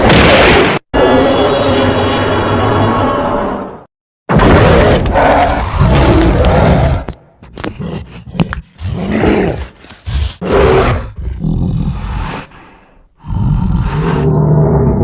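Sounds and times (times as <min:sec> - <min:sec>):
monster roaring: 0:04.3 - 0:07.1, 0:08.8 - 0:12.5, 0:13.2 - 0:15.0.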